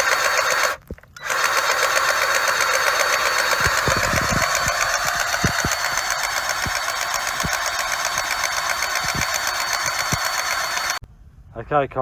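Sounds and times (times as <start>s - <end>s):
injection pump rattling: 0.0s - 11.0s.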